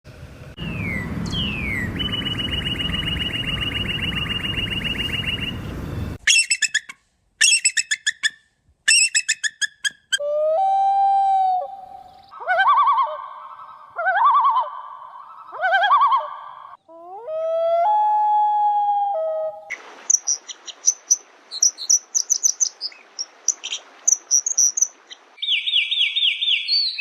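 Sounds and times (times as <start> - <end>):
long low bird call: 0.6 - 6.6
harsh rapid bird notes: 0.6 - 8.3
fast bird trill: 0.7 - 5.6
bird warbling: 0.7 - 10.2.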